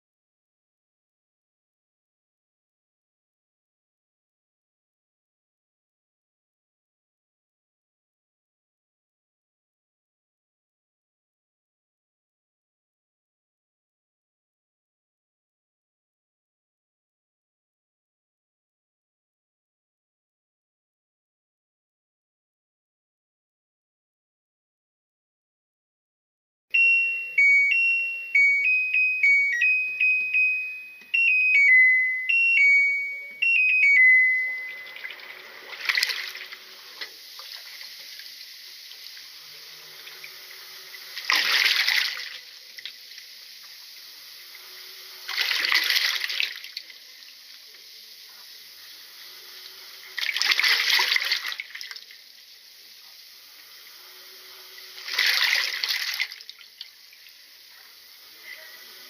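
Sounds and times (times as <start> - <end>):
washing machine chime beeps: 26.7 - 35.6
water running into tub: 34.8 - 47.8, 49.6 - 52.5, 54.7 - 57.5.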